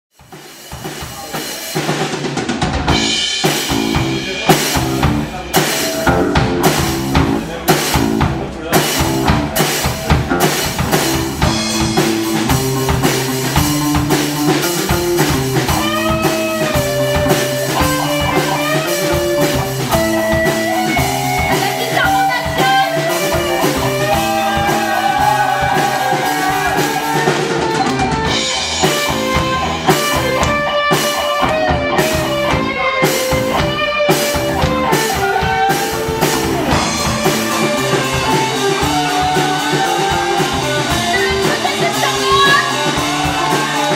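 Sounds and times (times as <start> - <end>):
drum kit beat: 0.1 - 43.9
guitars playing low riff: 2.9 - 43.9.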